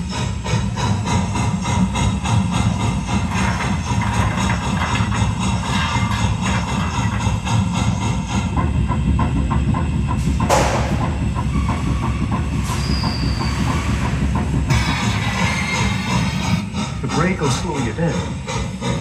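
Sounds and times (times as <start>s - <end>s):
steam locomotive running: 0.0s - 19.0s.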